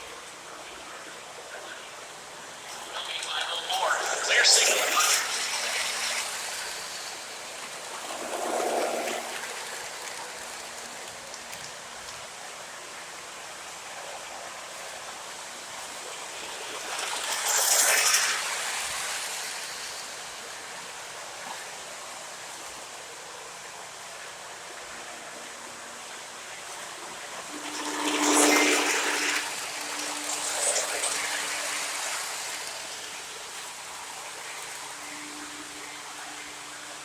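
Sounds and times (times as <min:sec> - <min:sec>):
model train running: 0:00.0 - 0:37.0
loud hiss: 0:02.8 - 0:07.8.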